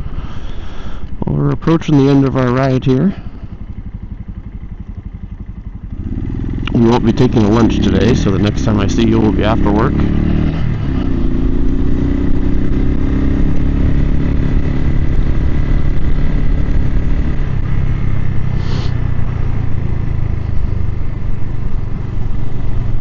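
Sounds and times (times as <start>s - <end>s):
motorcycle engine running: 0.0s - 23.0s
road and wind noise: 0.0s - 23.0s
brief hiss: 18.6s - 19.0s.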